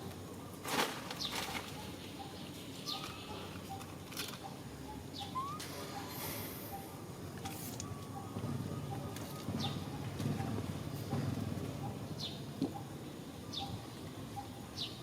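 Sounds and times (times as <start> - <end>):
high chirps and squeaks: 4.4 - 6.9.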